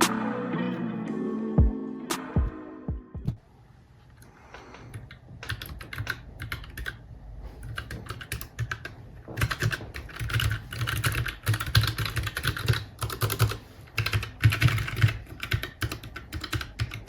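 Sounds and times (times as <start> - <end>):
mechanical keyboard typing: 4.9 - 7.0, 7.6 - 17.0.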